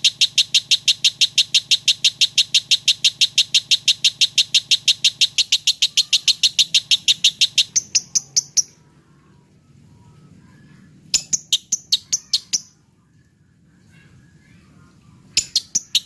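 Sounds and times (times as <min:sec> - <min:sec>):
lovebird rapid chirping: 0:00.0 - 0:08.8, 0:11.1 - 0:12.8, 0:15.3 - 0:16.0.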